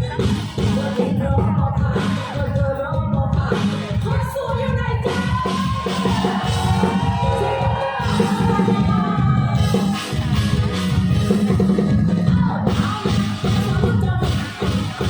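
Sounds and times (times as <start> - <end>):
woman singing: 0.0 - 10.1, 11.8 - 15.0
live band with bass and drums: 0.0 - 15.0.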